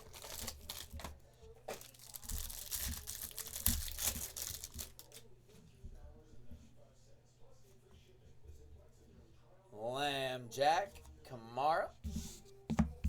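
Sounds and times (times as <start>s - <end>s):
plastic wrapper tearing and crinkling: 0.0s - 5.2s.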